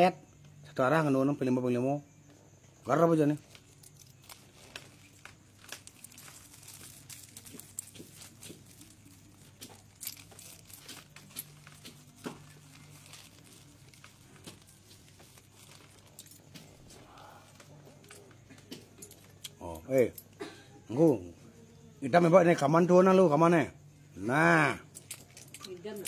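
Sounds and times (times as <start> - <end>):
crinkling and rustling: 3.2 - 19.4, 24.9 - 26.0.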